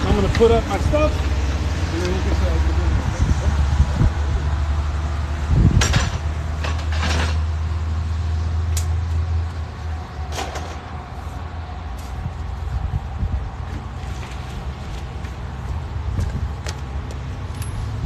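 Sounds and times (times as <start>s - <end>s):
tools and equipment clattering: 5.8s - 7.6s, 10.3s - 10.9s.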